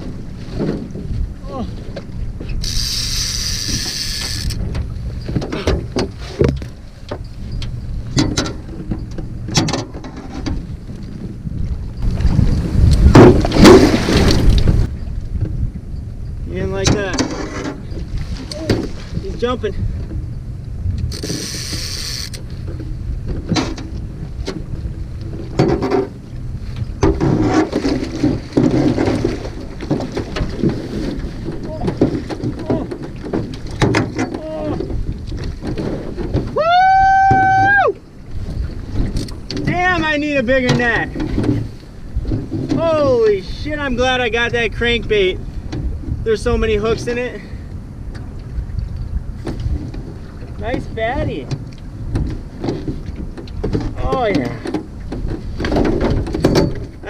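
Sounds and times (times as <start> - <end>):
wind rumble on microphone: 0.0 - 57.0
rod and reel clicks: 2.5 - 4.7, 20.9 - 22.6
fishing reel drag buzzing: 2.6 - 4.6, 21.1 - 22.4.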